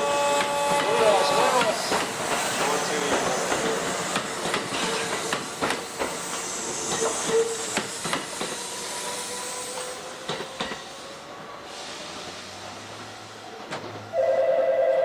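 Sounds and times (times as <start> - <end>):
train rolling noise: 0.0 - 14.4
train wheels clicking over rail joints: 0.4 - 10.9.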